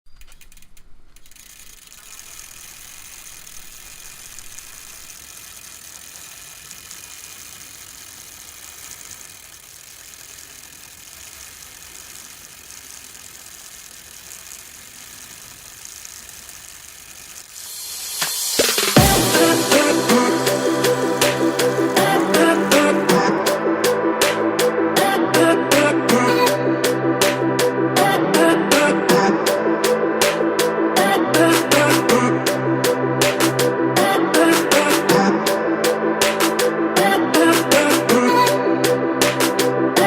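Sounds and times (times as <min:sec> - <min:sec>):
bike freehub ratchet buzzing: 0:00.1 - 0:28.1
loud music with a beat: 0:17.7 - 0:40.0.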